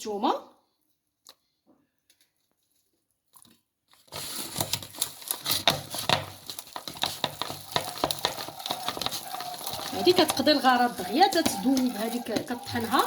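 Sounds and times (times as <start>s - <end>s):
food grinder clicking and crackling: 4.2s - 13.0s.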